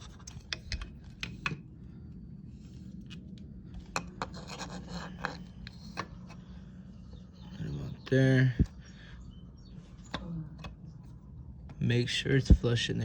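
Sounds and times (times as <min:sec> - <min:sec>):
metal scraping: 0:03.8 - 0:06.3.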